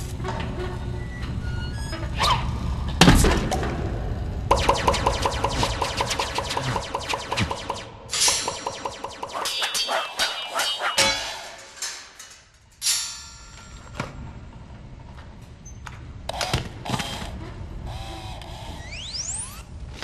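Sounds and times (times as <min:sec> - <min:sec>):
sharp hit with ringing tones: 0:04.5 - 0:11.8.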